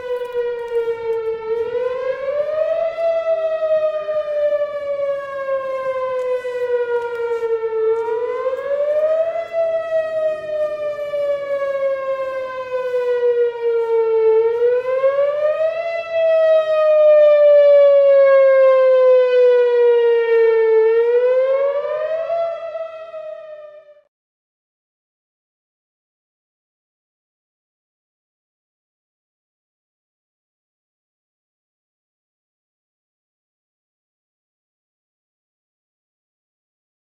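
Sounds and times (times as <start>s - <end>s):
warning siren wailing: 0.0s - 24.1s.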